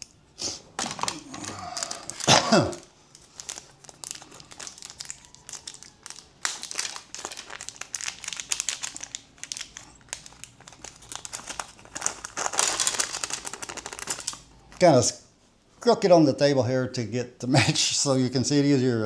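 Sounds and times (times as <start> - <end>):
plastic packaging crinkling: 0.7 - 15.0.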